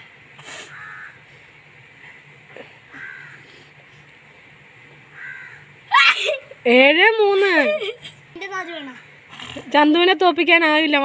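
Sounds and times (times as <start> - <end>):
crows cawing: 0.7 - 1.3, 2.9 - 3.6, 5.1 - 5.8.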